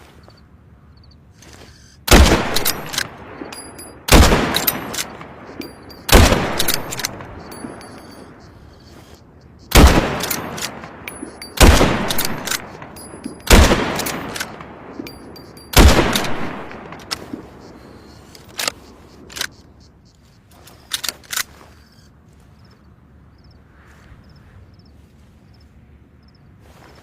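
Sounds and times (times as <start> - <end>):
rifle shots ringing: 2.1 - 8.9, 9.6 - 19.6.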